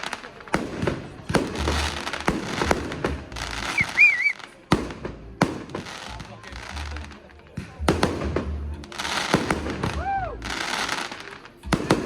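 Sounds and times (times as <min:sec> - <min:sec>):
fireworks bangs: 0:00.0 - 0:12.0
fireworks crackling: 0:00.0 - 0:12.0
warbling whistle: 0:03.7 - 0:04.4.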